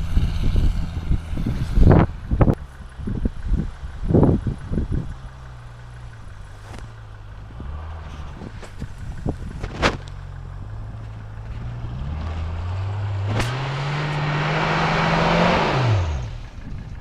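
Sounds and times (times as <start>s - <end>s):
engine revving: 0.0s - 17.0s.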